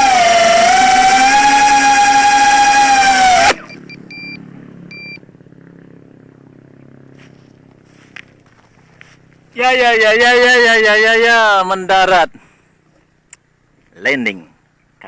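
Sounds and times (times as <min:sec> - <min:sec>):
drone motors whining: 0:00.0 - 0:05.2
short electronic beeps: 0:03.6 - 0:05.2.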